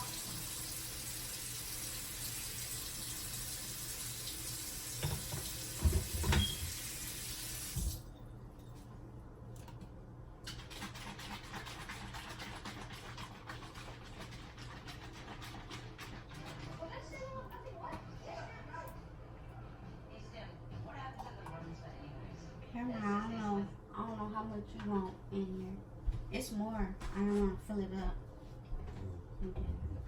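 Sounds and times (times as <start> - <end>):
water running from tap: 0.0 - 8.1.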